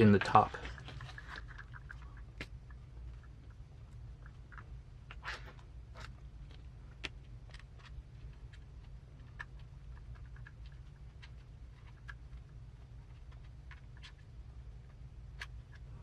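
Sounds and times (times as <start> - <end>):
rustling of gearbox parts: 0.0 - 3.6
low steady hum: 0.0 - 16.0.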